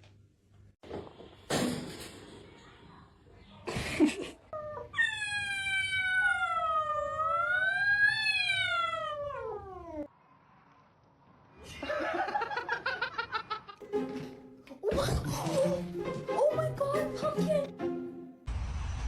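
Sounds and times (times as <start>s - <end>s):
cat yowling: 4.6s - 10.1s.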